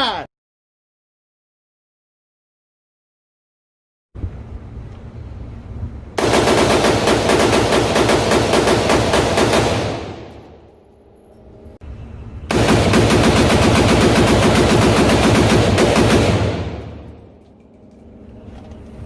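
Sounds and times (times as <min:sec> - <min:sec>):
rapid gunshots: 0:06.2 - 0:10.6, 0:12.5 - 0:17.1.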